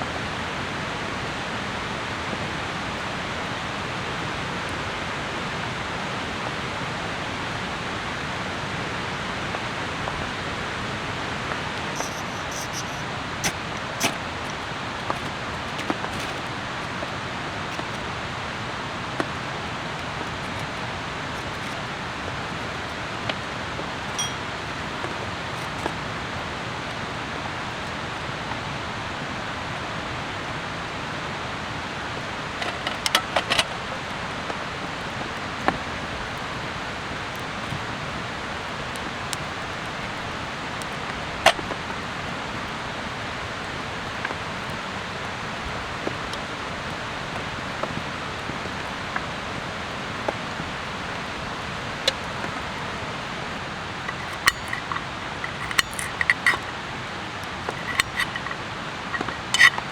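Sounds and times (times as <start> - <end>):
sharp clicks and knocks: 11.9 - 16.5, 32.6 - 33.8, 54.0 - 56.8, 57.4 - 59.9.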